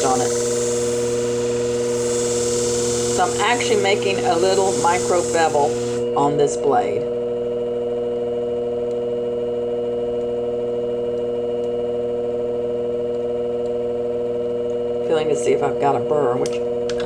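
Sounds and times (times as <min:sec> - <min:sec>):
sharpening machine motor humming: 0:00.0 - 0:06.2.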